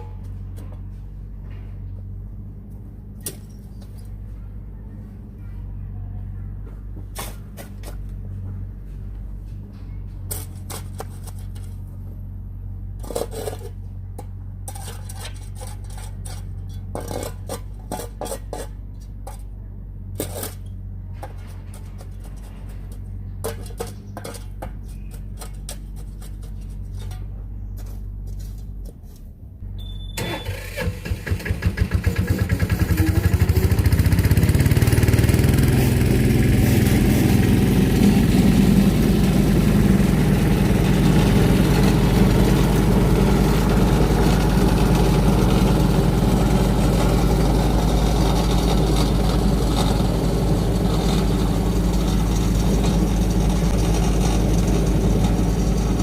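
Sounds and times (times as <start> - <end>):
low steady hum: 0.0 - 31.2
engine starting and running: 29.2 - 56.0.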